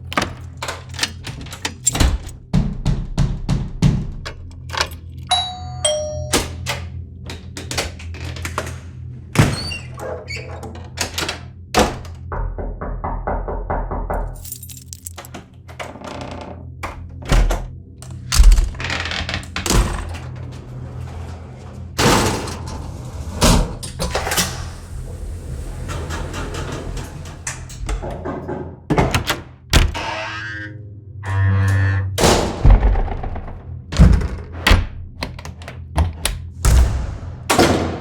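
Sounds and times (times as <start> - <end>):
door thuds and slams: 1.0 - 4.3, 28.9 - 30.0, 32.2 - 38.0
low music bed: 30.0 - 33.9.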